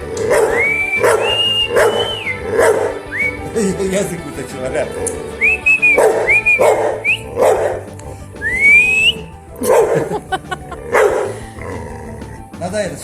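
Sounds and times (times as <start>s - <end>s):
dog howling: 0.0s - 3.4s, 5.8s - 7.8s
person whistling: 0.5s - 3.6s, 5.3s - 7.4s, 8.4s - 9.4s.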